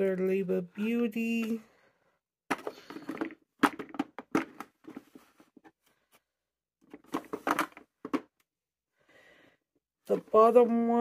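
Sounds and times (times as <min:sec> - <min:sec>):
plastic clicks and clatters: 0:02.5 - 0:05.2.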